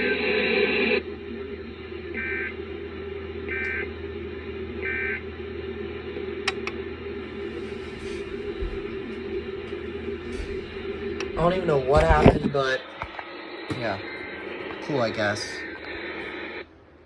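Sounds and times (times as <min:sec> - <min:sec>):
steady hum: 0:00.0 - 0:17.0
sharp clicks: 0:06.5 - 0:06.8.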